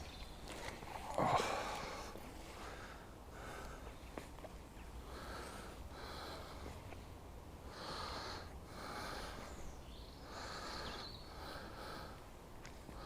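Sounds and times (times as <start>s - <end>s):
person breathing heavily: 1.0s - 4.0s, 5.0s - 6.9s, 7.6s - 12.3s.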